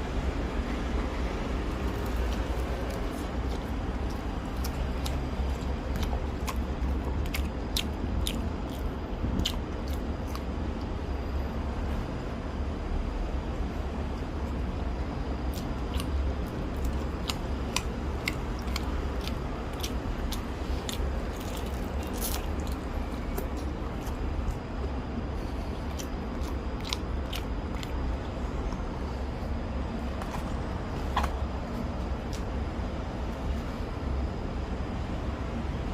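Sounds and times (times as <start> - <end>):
person chewing crunchy food: 1.4 - 10.9, 15.4 - 32.5.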